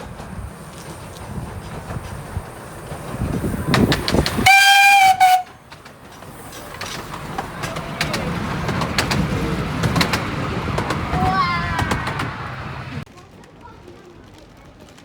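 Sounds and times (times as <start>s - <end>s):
train rumbling: 0.0s - 15.0s
wheels clicking over rail joints: 0.0s - 15.0s
train whistle blast: 4.4s - 5.6s.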